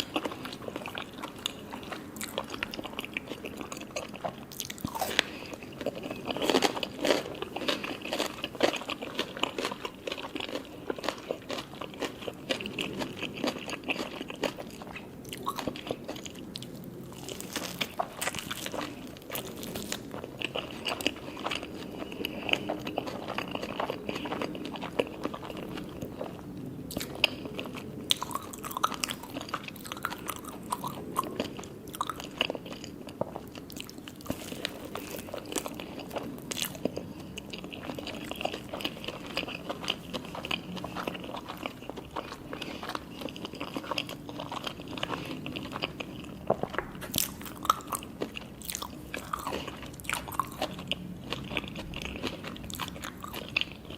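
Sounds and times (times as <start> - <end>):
chewing: 0.0 - 53.9
crunchy food being bitten: 0.0 - 53.9.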